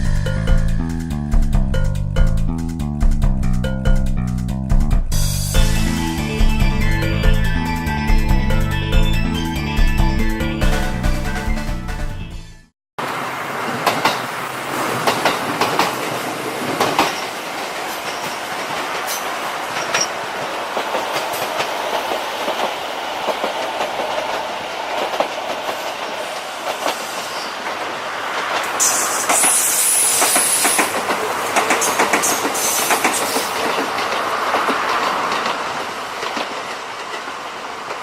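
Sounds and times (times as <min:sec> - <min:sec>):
train wheels clacking over rails: 0:13.7 - 0:38.0.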